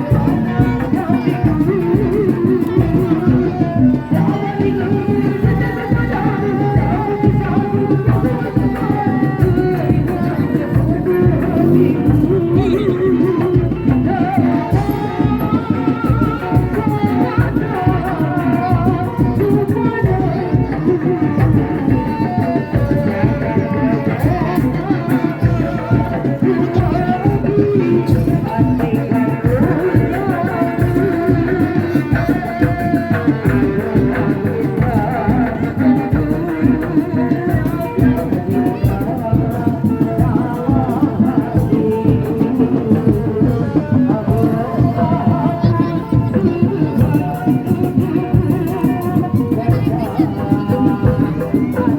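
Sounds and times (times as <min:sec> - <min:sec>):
drums beating: 0:00.0 - 0:51.9
person singing: 0:00.0 - 0:51.9.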